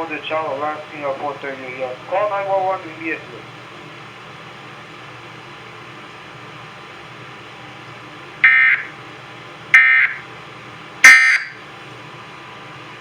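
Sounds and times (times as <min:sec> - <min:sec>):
digital data tone bursts: 0:08.4 - 0:08.9, 0:09.8 - 0:10.2, 0:11.0 - 0:11.5.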